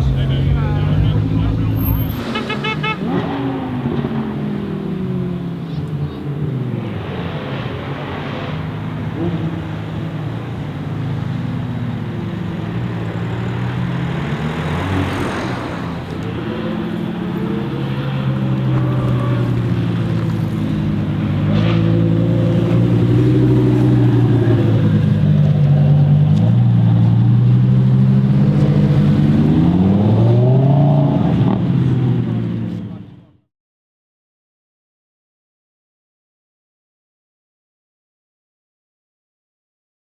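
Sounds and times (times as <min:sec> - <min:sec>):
sports car engine revving: 0:00.0 - 0:06.8, 0:08.2 - 0:33.2.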